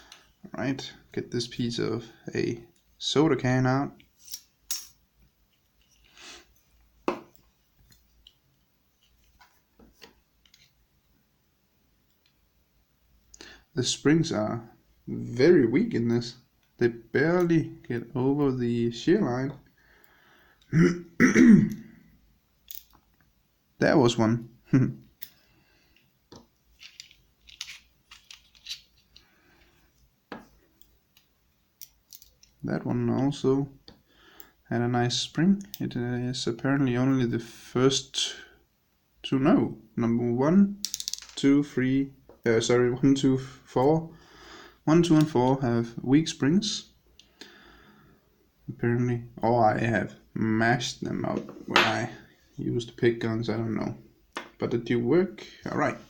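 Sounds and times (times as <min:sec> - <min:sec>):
small metal parts clicking: 0:22.6 - 0:23.0, 0:26.8 - 0:29.2, 0:30.8 - 0:32.6, 0:40.8 - 0:41.4.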